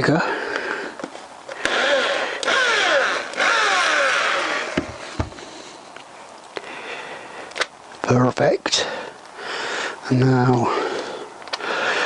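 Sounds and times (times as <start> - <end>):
electric drill cutting: 1.6 - 5.3
low knocks: 4.8 - 5.4.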